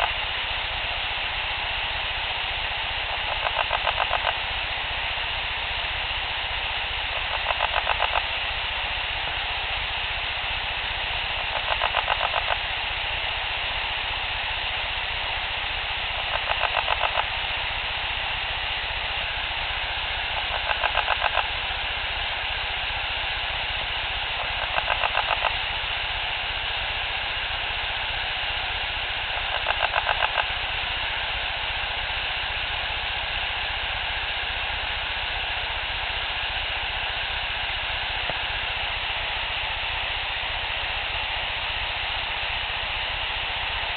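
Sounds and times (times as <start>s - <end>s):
constant hiss: 0.0s - 43.9s
rasping throaty pulses: 20.4s - 21.5s, 29.4s - 30.5s.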